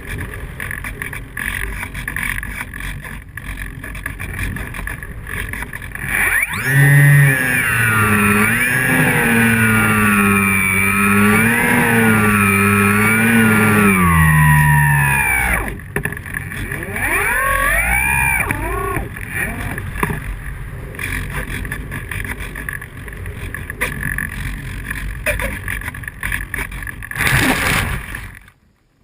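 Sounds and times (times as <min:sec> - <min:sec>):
electric motor whine: 0:06.0 - 0:20.8.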